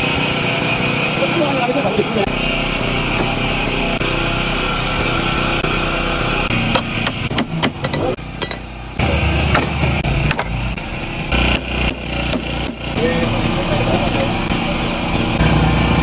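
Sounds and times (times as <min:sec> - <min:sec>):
scooter engine running: 0:00.0 - 0:16.0
sharp knocks and clicks: 0:06.7 - 0:08.7, 0:09.5 - 0:10.6, 0:11.3 - 0:12.9.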